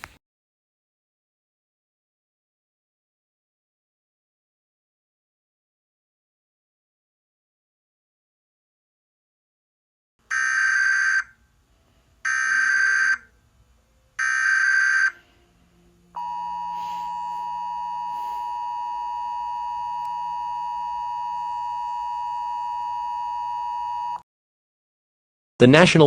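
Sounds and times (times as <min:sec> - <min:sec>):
piercing alarm tone: 0:10.3 - 0:11.4, 0:12.2 - 0:13.4, 0:14.2 - 0:15.3, 0:16.1 - 0:24.2
screechy digital data tones: 0:14.2 - 0:15.2.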